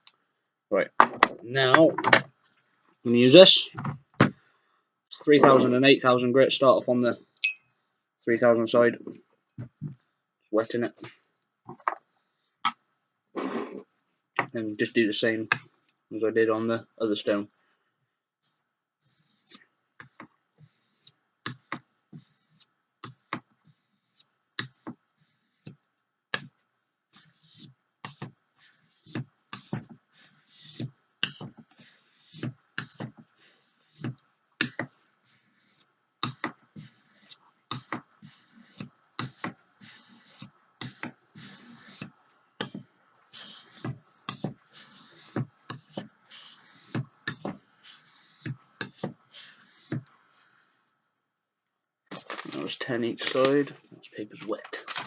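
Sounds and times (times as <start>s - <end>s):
knife scraping on whetstone: 43.4s - 49.9s.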